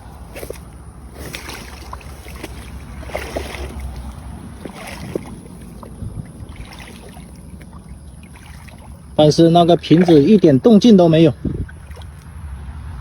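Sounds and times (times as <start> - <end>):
rustles and knocks of movement: 0.0 - 10.4
wind buffeting microphone: 0.0 - 13.0.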